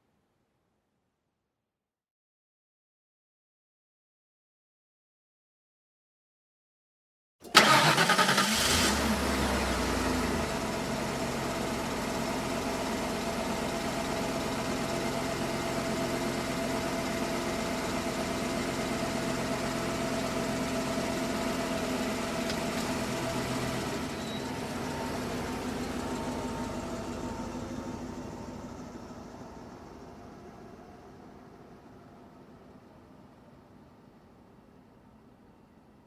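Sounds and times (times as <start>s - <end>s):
car engine starting and idling: 7.4s - 35.1s.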